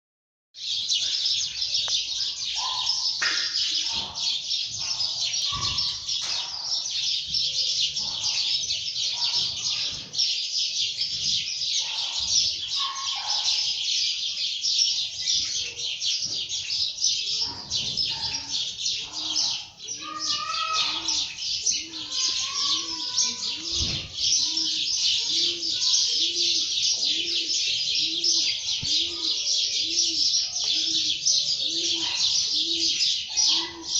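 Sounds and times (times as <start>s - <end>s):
small birds chirping: 0.6s - 33.9s
dove cooing: 17.3s - 33.9s.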